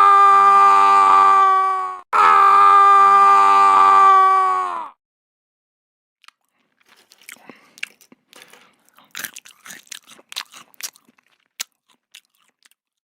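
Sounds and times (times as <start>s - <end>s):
chewing crunchy food: 6.2s - 13.0s.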